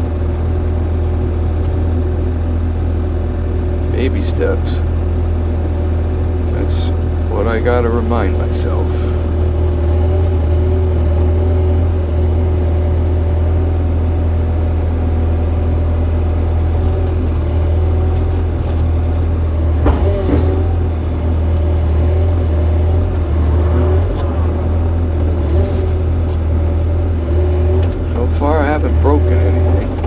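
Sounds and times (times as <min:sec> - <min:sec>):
excavator diesel engine droning: 0:00.0 - 0:30.0
short knocks: 0:19.6 - 0:24.7.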